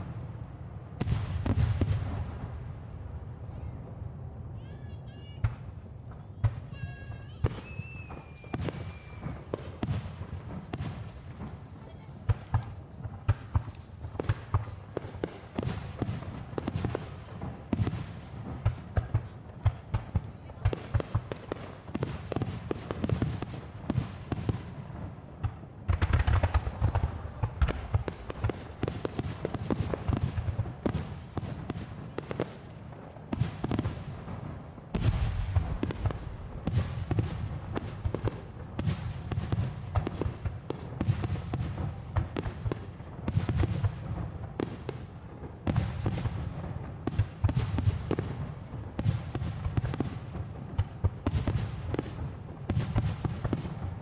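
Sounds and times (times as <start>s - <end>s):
fireworks booming and crackling: 0.0s - 54.0s
faint steady high tone: 2.0s - 25.6s, 26.6s - 38.8s.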